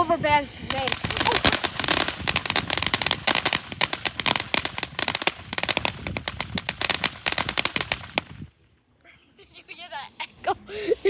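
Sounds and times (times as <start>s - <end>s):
firecrackers cracking: 0.0s - 8.5s.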